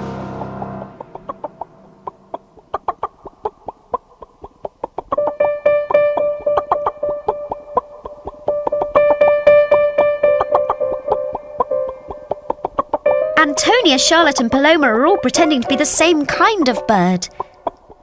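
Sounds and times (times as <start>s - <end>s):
chicken clucking: 0.2s - 18.0s
light piano music: 5.1s - 18.0s.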